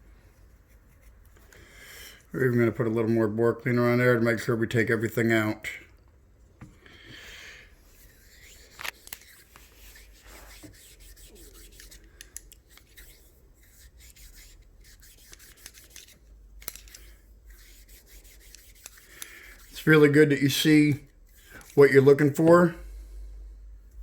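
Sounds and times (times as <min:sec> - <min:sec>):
swab scrubbing in gun barrel: 0:07.8 - 0:22.6.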